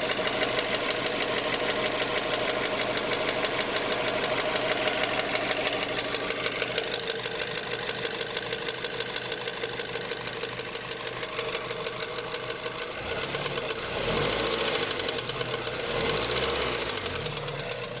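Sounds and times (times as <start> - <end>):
car engine ticking: 0.0 - 18.0
engine revving: 11.3 - 18.0.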